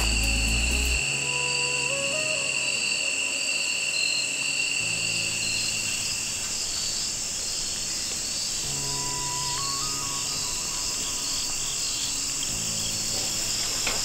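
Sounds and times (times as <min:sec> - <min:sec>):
crickets and insects trilling: 0:00.0 - 0:14.0
soft background music: 0:00.0 - 0:14.0.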